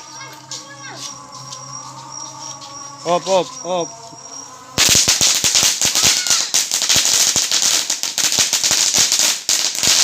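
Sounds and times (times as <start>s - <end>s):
firework crackling and hissing: 4.3s - 10.0s.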